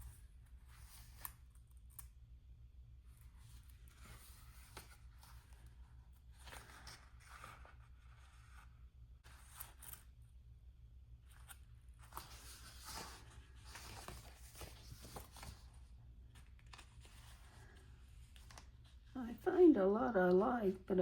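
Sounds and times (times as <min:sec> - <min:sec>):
paper sheets rustling: 0:11.4 - 0:19.0.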